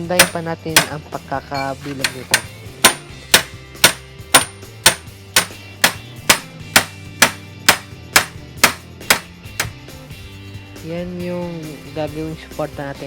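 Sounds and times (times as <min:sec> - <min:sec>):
hammer striking steel bar: 0:00.2 - 0:01.0, 0:01.6 - 0:09.7.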